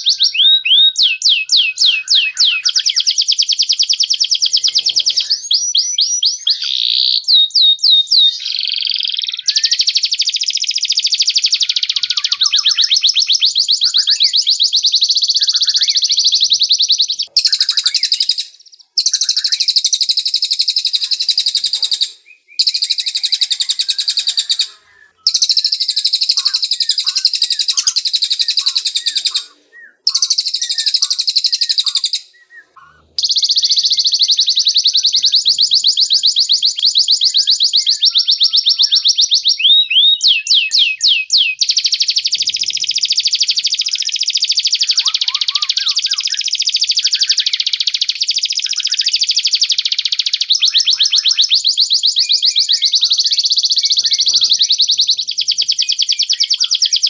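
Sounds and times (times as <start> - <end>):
canary singing trills: 0.0 - 57.0.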